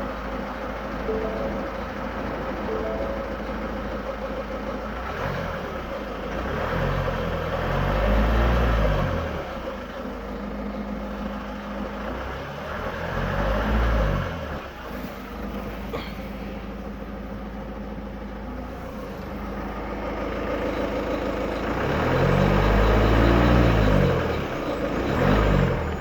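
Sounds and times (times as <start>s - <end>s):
car engine running: 0.0s - 7.6s
low sound rising and falling: 1.1s - 3.8s.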